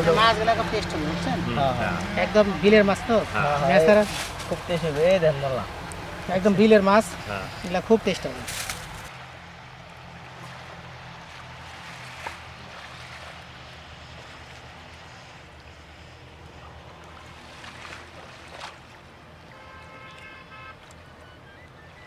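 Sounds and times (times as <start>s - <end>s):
low motor hum: 0.0s - 9.1s.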